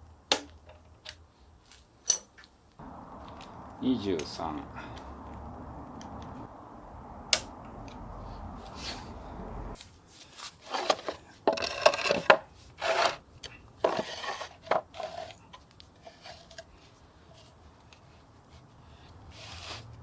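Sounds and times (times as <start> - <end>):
scrapes rustles and knocks of objects: 8.6 - 20.0.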